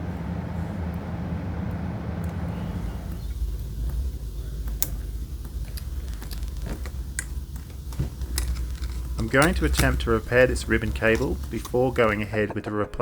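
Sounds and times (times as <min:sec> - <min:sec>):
electric blower hissing: 0:00.0 - 0:12.6
low hum: 0:00.0 - 0:12.7
small tools clicking and tapping: 0:03.0 - 0:12.5.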